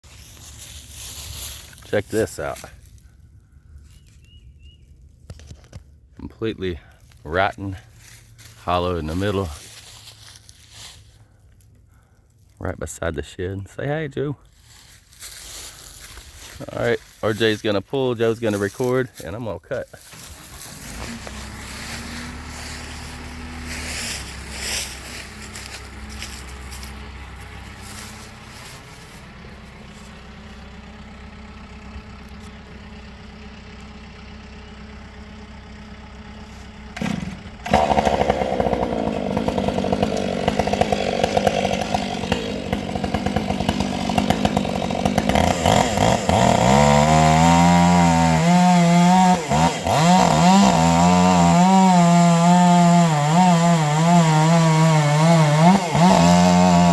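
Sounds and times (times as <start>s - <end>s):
chainsaw cutting into tree trunk: 0.1s - 3.1s, 6.8s - 11.2s, 14.7s - 19.3s, 20.0s - 30.8s, 36.9s - 56.9s
chainsaw idling: 0.1s - 4.2s, 6.2s - 56.9s.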